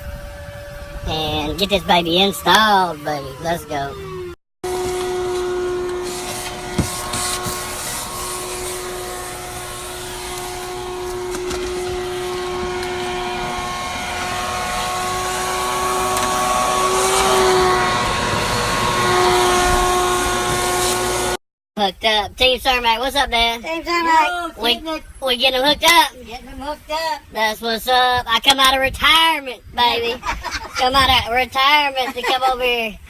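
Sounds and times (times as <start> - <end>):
motor whining: 0.0 - 21.4.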